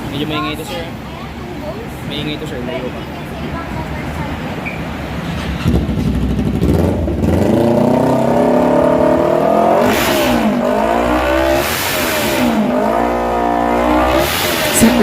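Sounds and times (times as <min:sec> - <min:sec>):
motorcycle engine revving: 0:05.3 - 0:15.0.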